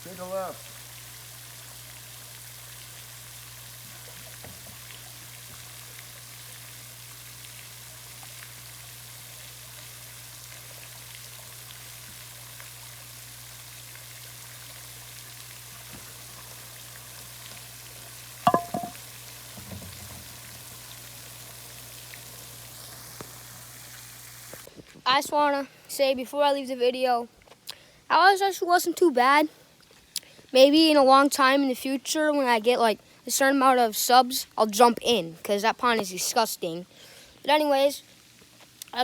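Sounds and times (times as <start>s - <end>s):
sprinkler spray on water: 0.0s - 24.7s.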